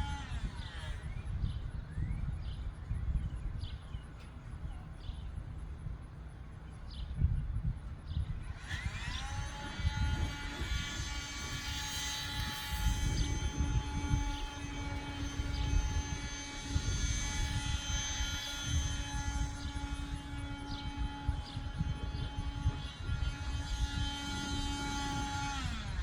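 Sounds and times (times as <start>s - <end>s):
warning siren steady tone: 8.7s - 26.0s.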